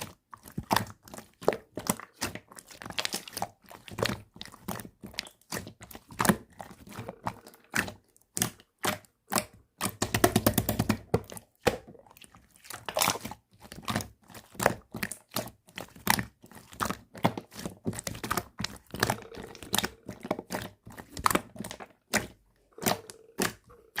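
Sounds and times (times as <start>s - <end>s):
slime squeezed popping and clicking: 18.1s - 24.0s.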